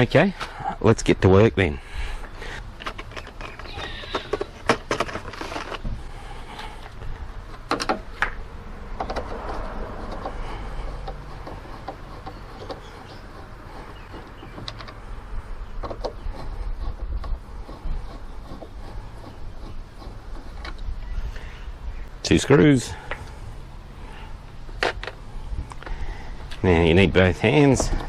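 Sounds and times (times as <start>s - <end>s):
low steady rumble: 0.0s - 28.0s
clicks and knocks of hand work: 2.8s - 5.9s, 6.6s - 15.0s, 15.7s - 20.9s.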